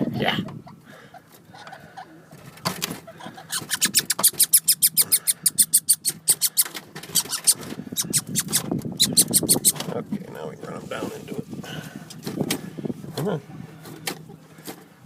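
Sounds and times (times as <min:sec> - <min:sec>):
squirrel chattering: 0:03.3 - 0:09.8.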